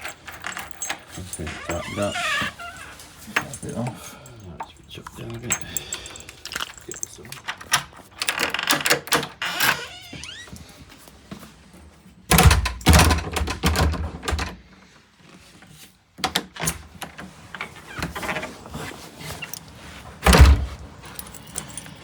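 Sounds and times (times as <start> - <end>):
door thudding against frame: 20.2 - 20.8.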